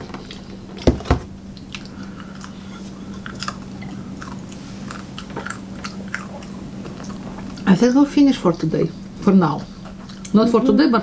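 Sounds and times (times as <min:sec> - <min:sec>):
sharp knocks: 0:00.9 - 0:01.4
people chewing food: 0:03.3 - 0:07.7.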